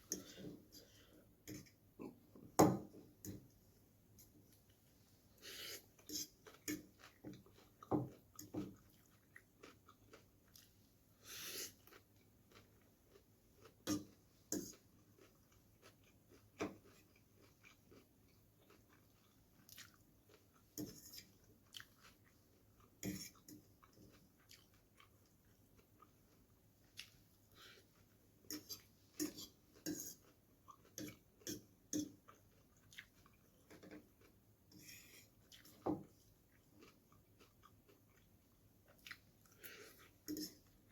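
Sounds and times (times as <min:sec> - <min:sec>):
chewing and mouth sounds: 0:11.7 - 0:20.8, 0:21.6 - 0:28.9, 0:35.4 - 0:40.6.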